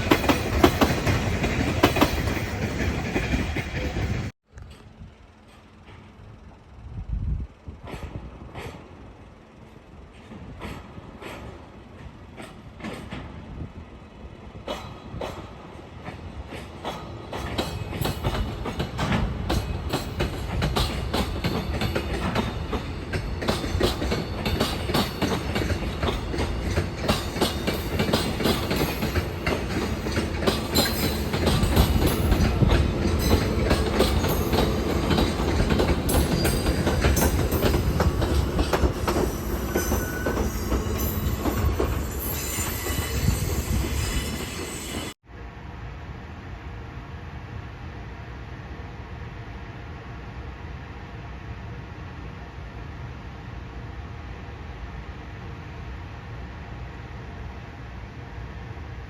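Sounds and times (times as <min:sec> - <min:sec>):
freight wagons rumbling: 0:16.9 - 0:44.0.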